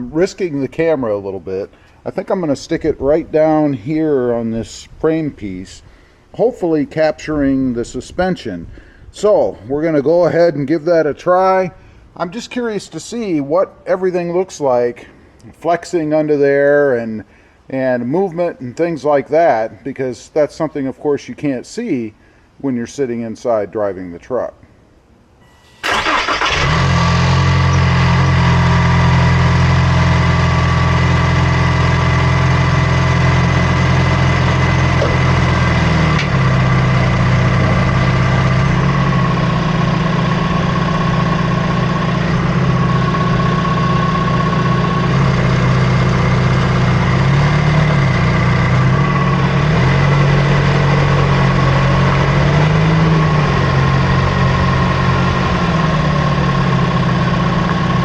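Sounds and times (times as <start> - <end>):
high whining tones: 25.4 - 26.4
truck engine droning: 25.5 - 58.0.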